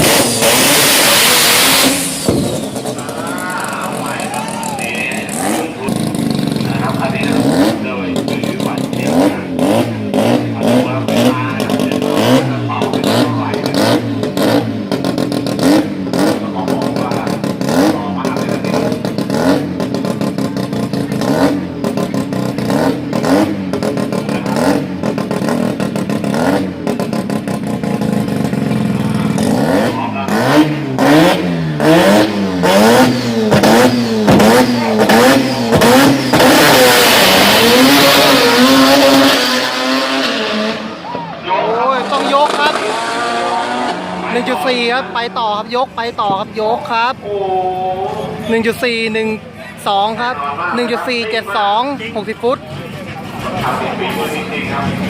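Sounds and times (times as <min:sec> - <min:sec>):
loud steady rush of noise: 0:00.0 - 0:15.0
rotary engine popping and revving: 0:00.0 - 0:47.2.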